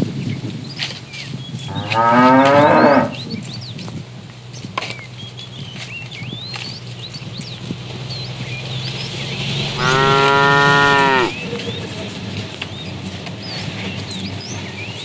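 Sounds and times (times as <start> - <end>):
cow mooing: 1.7 - 3.3, 9.6 - 11.4.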